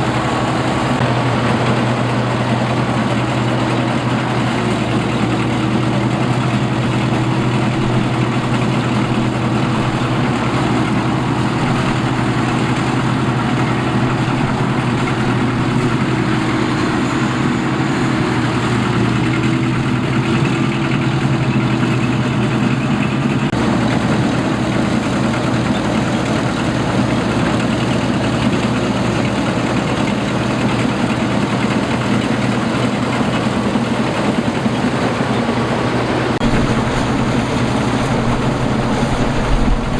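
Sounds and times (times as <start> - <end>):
harvester engine running: 0.0 - 39.9
mechanical clatter: 36.4 - 39.9.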